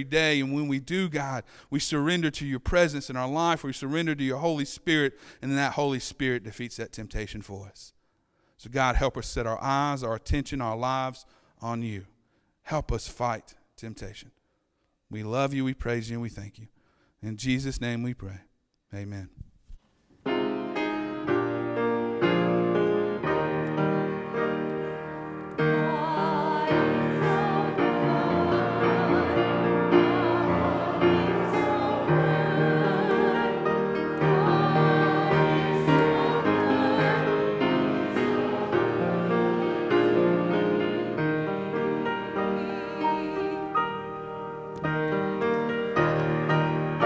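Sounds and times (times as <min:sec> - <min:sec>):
piano playing: 0:20.2 - 0:47.0
voices singing with vibrato: 0:25.6 - 0:44.0.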